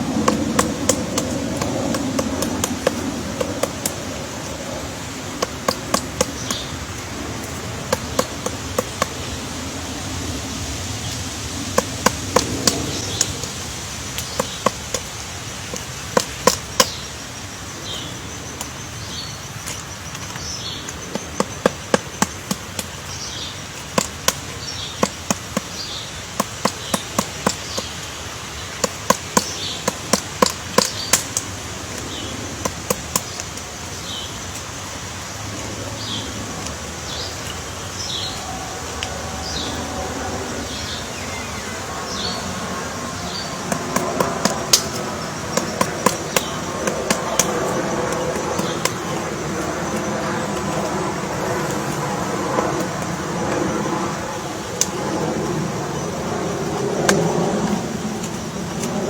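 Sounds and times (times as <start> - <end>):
woodpecker pecking wood: 0.0 - 9.6, 11.0 - 17.1, 19.5 - 33.7, 41.1 - 53.3.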